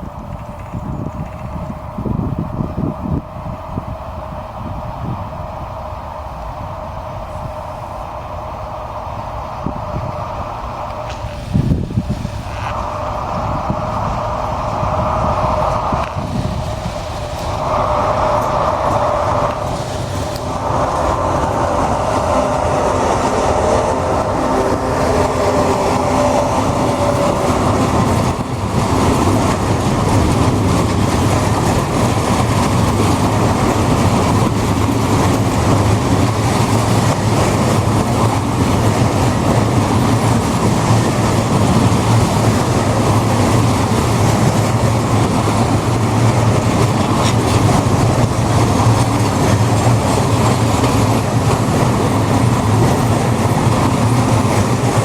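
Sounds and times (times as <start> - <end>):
train wheels on rails: 0.0 - 55.0
wavering whine: 1.0 - 43.2.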